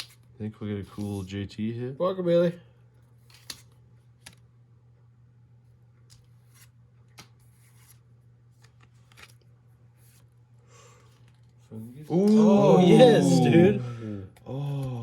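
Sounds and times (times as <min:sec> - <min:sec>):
trading cards clicking and rustling: 0:03.2 - 0:04.4.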